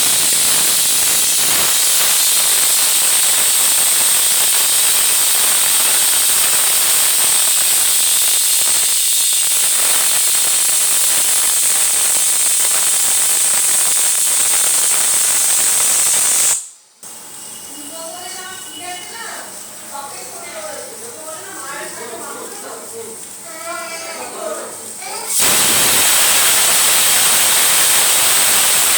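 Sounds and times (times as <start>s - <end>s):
pressure cooker whistling: 0.0s - 19.5s, 25.3s - 28.9s.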